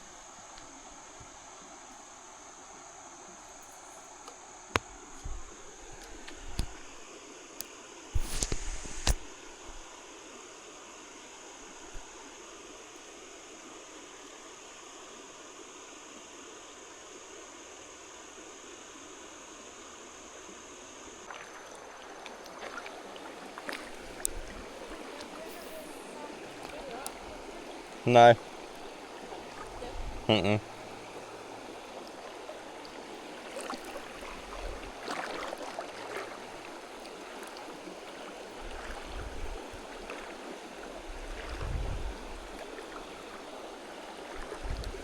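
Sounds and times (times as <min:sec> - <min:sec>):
high hiss: 0:00.0 - 0:21.3, 0:23.6 - 0:35.2
creek water rushing: 0:00.0 - 0:45.0.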